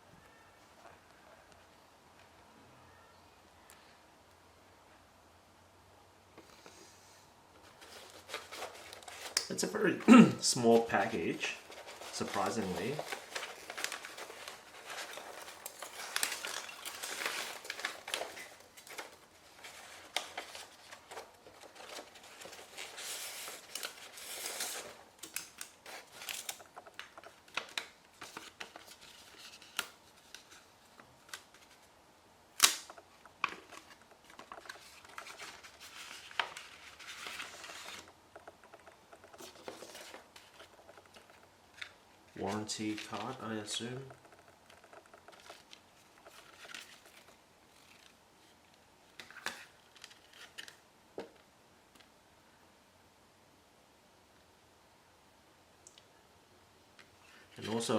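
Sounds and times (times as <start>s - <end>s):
paper and tape rustling and tearing: 7.6s - 31.9s, 32.5s - 50.8s.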